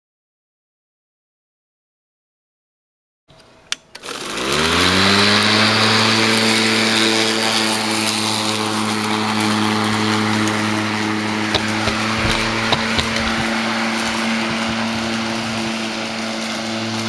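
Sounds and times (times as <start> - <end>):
electric lawn mower running: 3.9 - 17.0.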